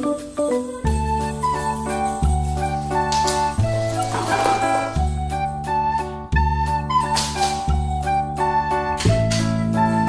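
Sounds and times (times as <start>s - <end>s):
sustained melody notes: 4.0s - 5.3s.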